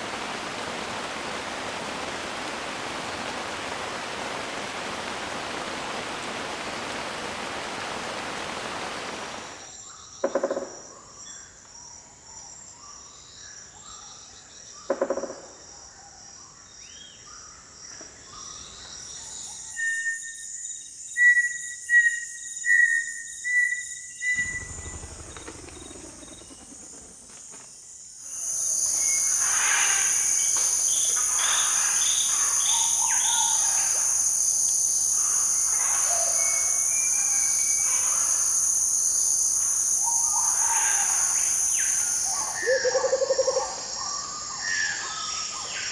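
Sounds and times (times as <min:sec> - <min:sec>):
heavy rain hissing: 0:00.0 - 0:09.6, 0:24.4 - 0:27.0, 0:28.3 - 0:42.6
high insect chorus: 0:00.0 - 0:45.9
bird calls: 0:24.3 - 0:27.4.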